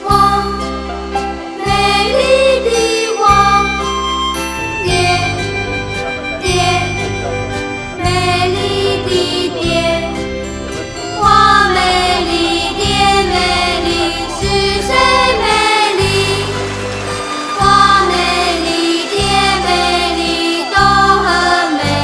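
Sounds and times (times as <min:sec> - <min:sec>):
background music with chords: 0:00.0 - 0:22.0.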